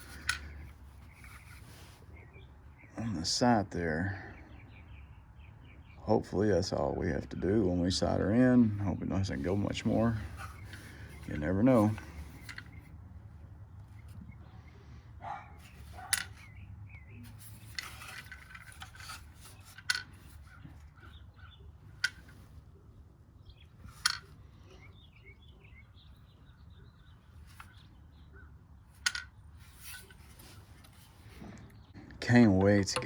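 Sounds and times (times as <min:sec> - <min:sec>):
rifle clicks and knocks: 0:00.0 - 0:01.7, 0:09.4 - 0:12.8, 0:15.6 - 0:16.5, 0:17.3 - 0:21.2, 0:21.8 - 0:22.6, 0:23.8 - 0:24.4, 0:28.9 - 0:31.7
light rubbing: 0:00.0 - 0:02.1, 0:08.7 - 0:12.9, 0:15.6 - 0:16.6, 0:17.2 - 0:22.9, 0:23.6 - 0:25.0, 0:27.0 - 0:31.9.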